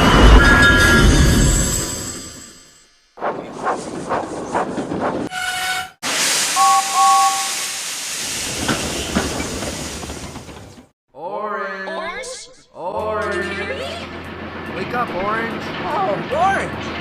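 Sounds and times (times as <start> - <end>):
steam locomotive chuffs: 4.5 - 10.9
train whistle: 5.3 - 7.8
two-tone whistle toots: 5.3 - 7.8
steam hissing: 6.0 - 10.8.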